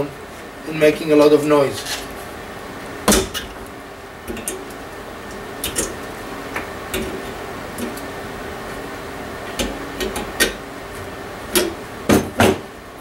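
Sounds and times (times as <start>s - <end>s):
fan parts clicking and knocking: 3.0s - 8.2s, 9.4s - 12.7s.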